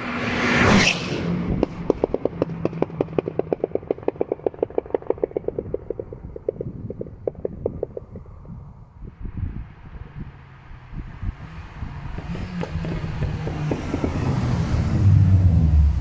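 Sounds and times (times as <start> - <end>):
exhaust popping on overrun: 0.0 - 16.0
low engine rumble: 1.2 - 16.0
scattered thumps: 1.5 - 9.2.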